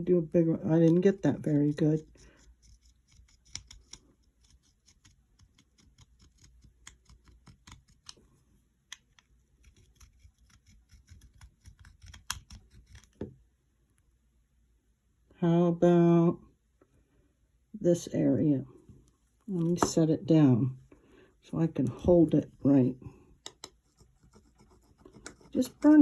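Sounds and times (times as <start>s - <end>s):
metal tool scraping solder: 0.7s - 8.2s, 21.9s - 26.0s.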